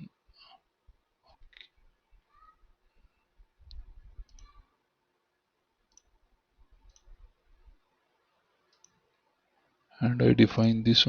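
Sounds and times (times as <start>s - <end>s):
computer mouse clicks: 3.6s - 4.6s, 5.9s - 6.2s, 6.8s - 7.2s, 8.7s - 9.1s.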